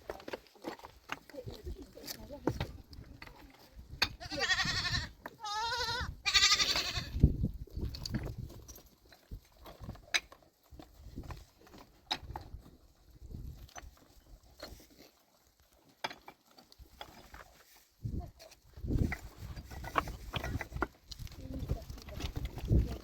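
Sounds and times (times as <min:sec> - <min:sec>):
goat bleating: 0:04.1 - 0:07.2.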